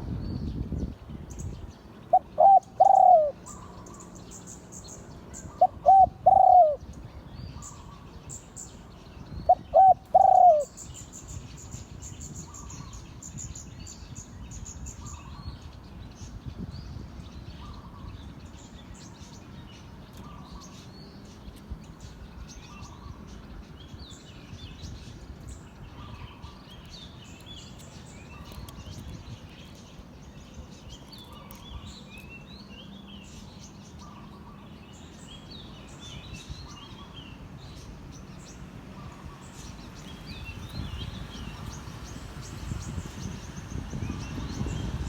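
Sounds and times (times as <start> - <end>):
birds chirping and twittering: 0.0 - 45.0.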